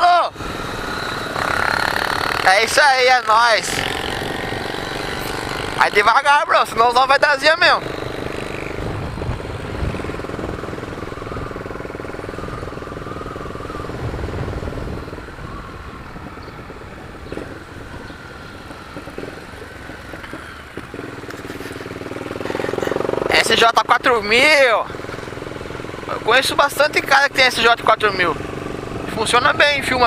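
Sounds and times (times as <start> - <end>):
motorcycle engine running: 0.0 - 30.0.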